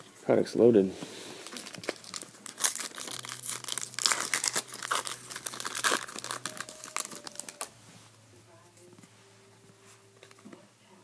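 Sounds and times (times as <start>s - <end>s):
wrapper tearing and crinkling: 1.4s - 7.7s.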